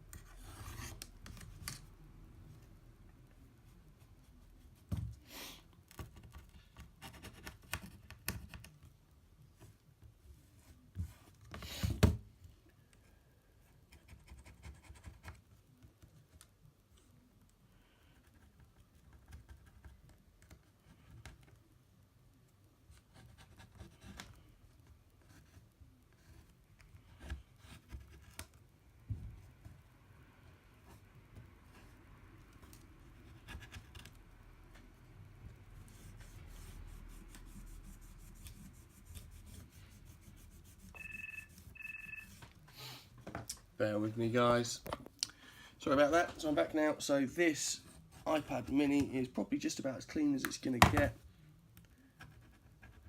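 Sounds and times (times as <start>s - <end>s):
scratching and rubbing on frame: 35.8s - 42.4s.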